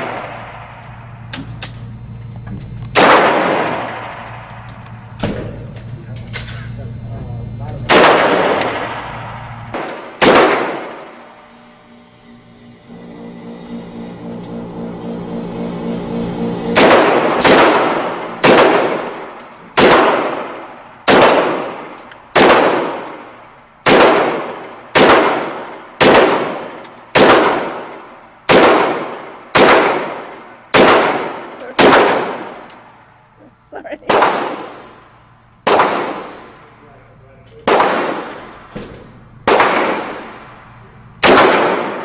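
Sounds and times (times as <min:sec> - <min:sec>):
echoing gunshots: 0:00.0 - 0:00.8, 0:02.9 - 0:05.6, 0:07.9 - 0:11.2, 0:16.7 - 0:32.8, 0:34.0 - 0:36.8, 0:37.6 - 0:42.0
low pulsing hum: 0:00.0 - 0:42.0.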